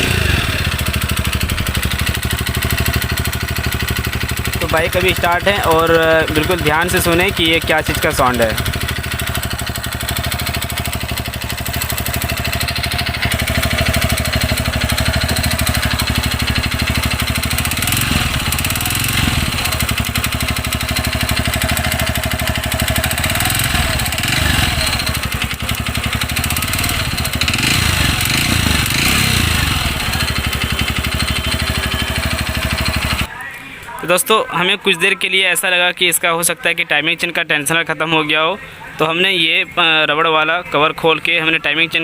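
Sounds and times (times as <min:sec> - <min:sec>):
engine revving: 0:00.0 - 0:33.3
motorcycle engine idling: 0:00.0 - 0:33.5.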